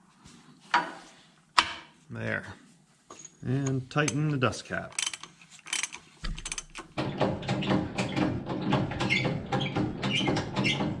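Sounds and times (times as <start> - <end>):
ratchet wrench clicking: 5.0 - 6.8.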